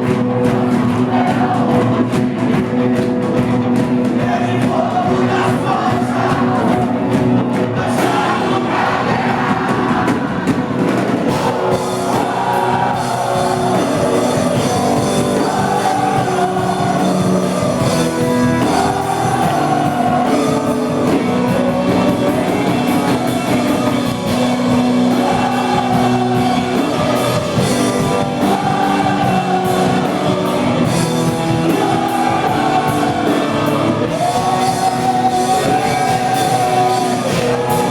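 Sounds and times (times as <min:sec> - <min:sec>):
rock band with guitar and drums: 0:00.0 - 0:37.9
person singing: 0:11.3 - 0:37.9.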